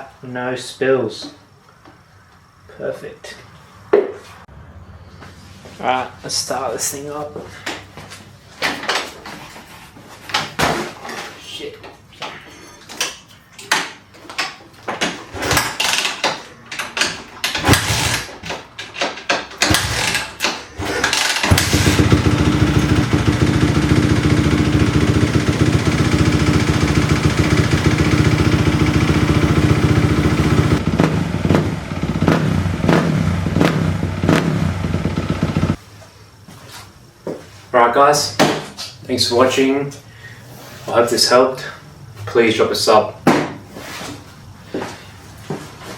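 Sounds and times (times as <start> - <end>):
motorcycle engine failing to start: 15.4 - 35.8
motorcycle engine running: 19.7 - 20.2, 20.8 - 35.8
engine throttle blips: 21.2 - 35.8.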